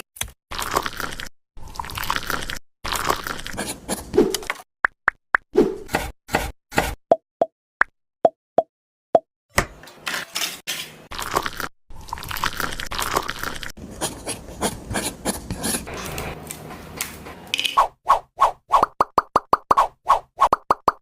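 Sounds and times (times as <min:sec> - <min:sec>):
trowel scraping wet mortar: 0:13.8 - 0:17.5.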